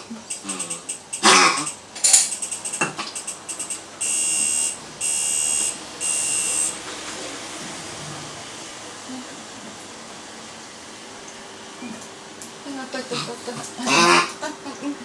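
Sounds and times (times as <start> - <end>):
long electronic beeps: 0.2 - 6.8.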